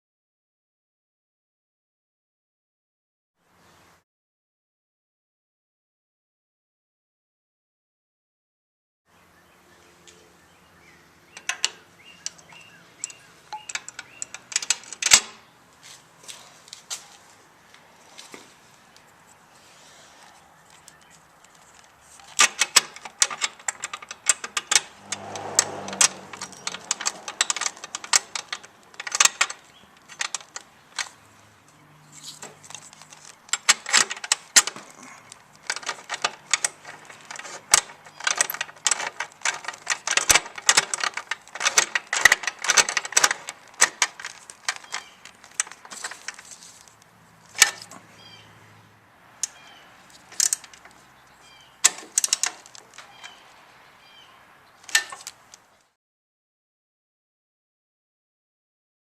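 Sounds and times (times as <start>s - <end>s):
metal tools clinking: 20.6s - 31.2s, 32.1s - 47.0s, 49.4s - 53.5s, 54.9s - 55.4s.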